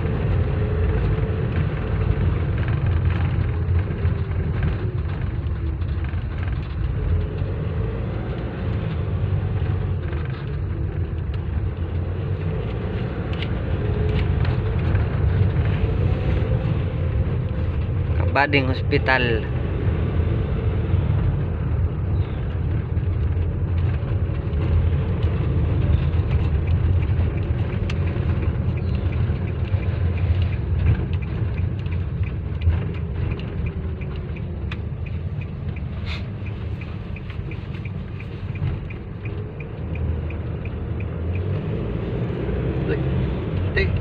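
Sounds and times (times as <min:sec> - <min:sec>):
van engine and road rumble: 0:00.0 - 0:44.0
light repeating ticking: 0:26.3 - 0:42.0.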